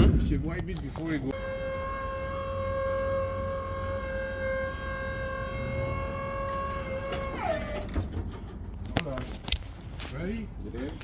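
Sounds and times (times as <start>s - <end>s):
electric motor whining: 1.4s - 7.8s.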